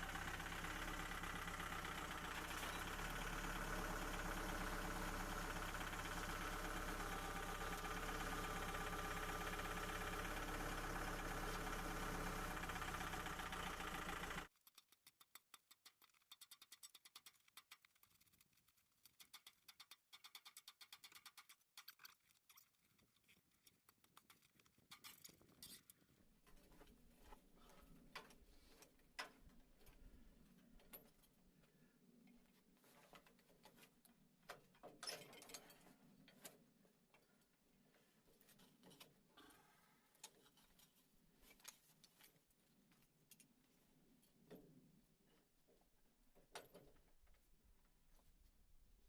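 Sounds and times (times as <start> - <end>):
small engine running: 0.0 - 14.5.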